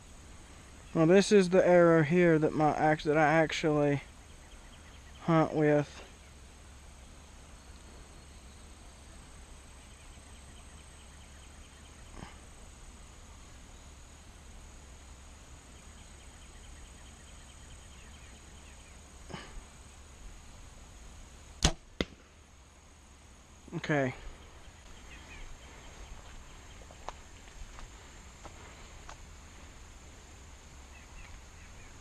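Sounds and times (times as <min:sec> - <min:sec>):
faint outdoor background: 0:00.0 - 0:32.0
bowstring release crack: 0:21.6 - 0:22.2
arrow hitting target: 0:21.6 - 0:22.3.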